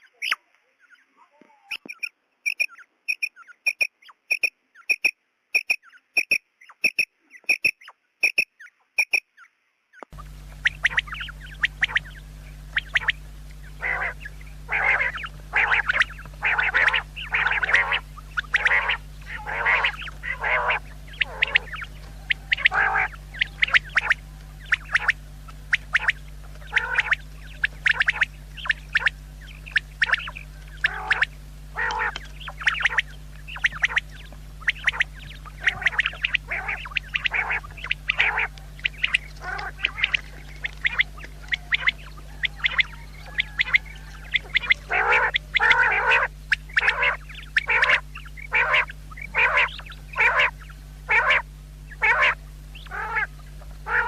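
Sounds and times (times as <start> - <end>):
quail calling in harsh notes: 0.0 - 54.0
sharp clicks: 1.7 - 9.2
low electrical hum: 9.7 - 54.0.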